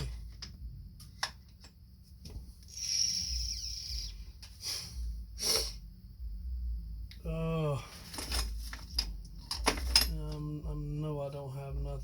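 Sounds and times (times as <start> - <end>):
rubbing hiss: 2.6 - 5.9.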